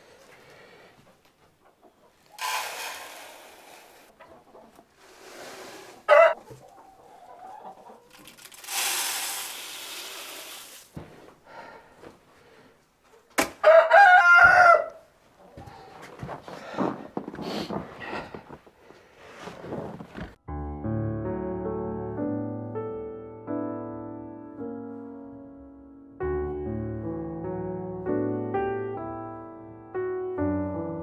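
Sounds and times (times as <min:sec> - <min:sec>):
rooster crowing: 0:06.1 - 0:06.4, 0:13.6 - 0:15.1
rustling noise: 0:15.2 - 0:20.4.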